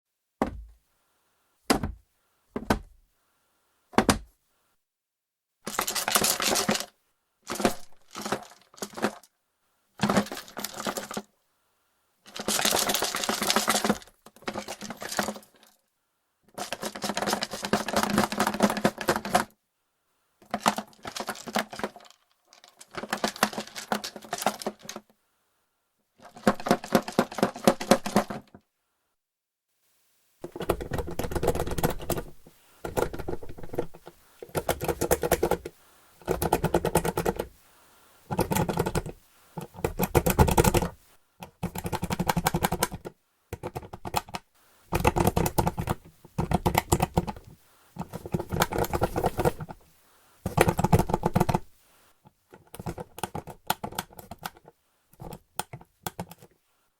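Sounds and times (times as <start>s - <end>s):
knocks on wooden box: 0.4s - 0.8s, 1.7s - 2.0s, 2.6s - 2.9s, 4.0s - 4.3s
game pieces rattling in wooden box: 5.7s - 6.9s, 7.5s - 9.3s, 10.0s - 11.3s, 12.3s - 15.8s, 16.6s - 19.5s, 20.5s - 25.0s, 26.2s - 28.5s, 30.4s - 37.5s, 41.6s - 49.8s, 50.5s - 51.7s.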